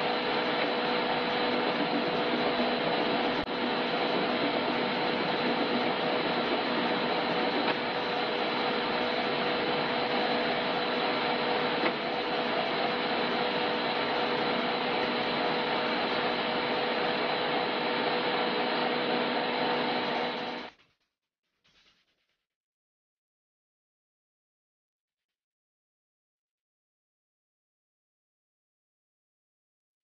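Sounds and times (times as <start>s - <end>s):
lathe humming and whining: 0.0s - 20.7s.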